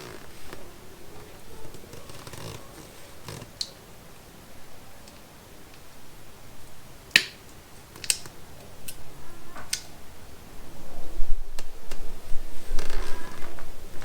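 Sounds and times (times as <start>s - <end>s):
sharp clicks and snaps crimping: 3.2s - 3.8s, 7.1s - 9.0s.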